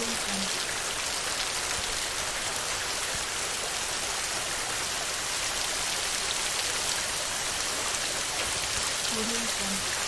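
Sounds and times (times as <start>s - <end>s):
heavy rain on a metal roof: 0.0s - 10.0s.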